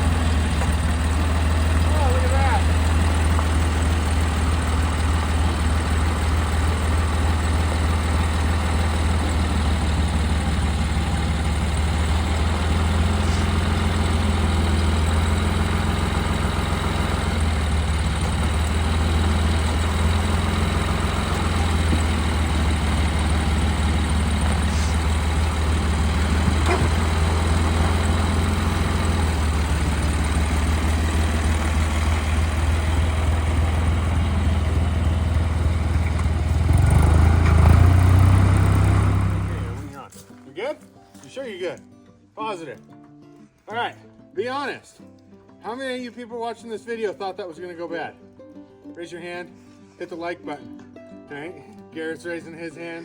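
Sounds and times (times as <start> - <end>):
tractor engine running: 0.0 - 40.1.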